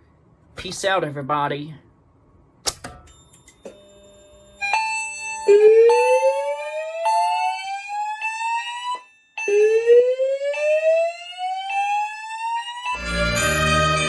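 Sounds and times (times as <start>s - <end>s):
fire alarm chimes: 3.1s - 14.0s
fire alarm whoop tone: 4.6s - 14.0s
christmas music: 12.8s - 14.0s.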